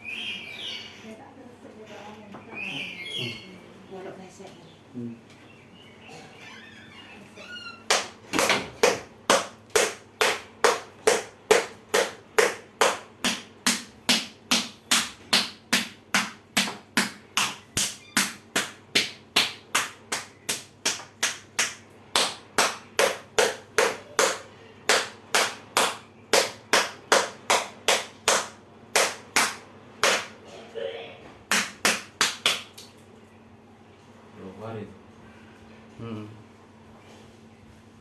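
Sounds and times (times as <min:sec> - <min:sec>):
hands slapping a body: 0:07.9 - 0:30.4, 0:31.5 - 0:32.9.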